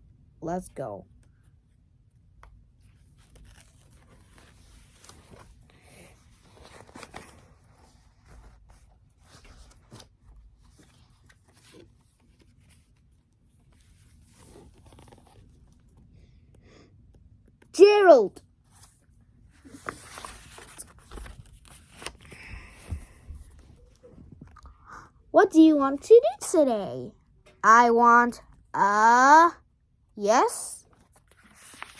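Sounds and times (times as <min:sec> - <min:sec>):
book pages turning: 0:02.9 - 0:16.0, 0:18.6 - 0:24.5, 0:30.9 - 0:31.9.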